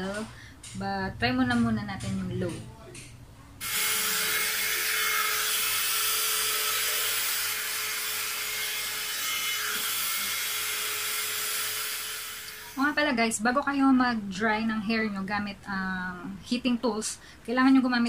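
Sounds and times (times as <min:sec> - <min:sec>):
hair dryer brush running: 0:03.6 - 0:13.0.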